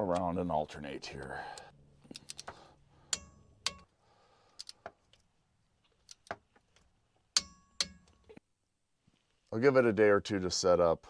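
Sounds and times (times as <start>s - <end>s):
torque wrench clicking: 1.6s - 3.9s.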